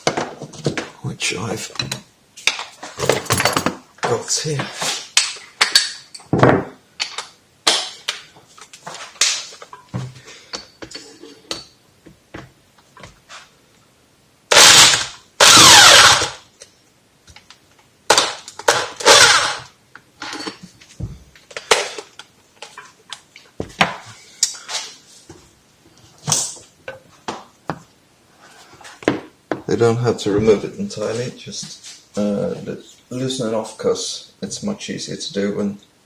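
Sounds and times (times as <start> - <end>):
tools clinking and knocking: 1.8 - 4.2, 20.2 - 20.6.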